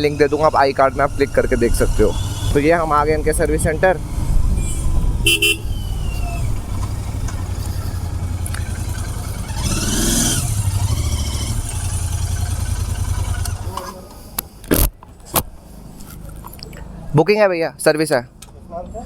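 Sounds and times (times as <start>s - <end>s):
motorcycle engine running: 0.0s - 14.2s.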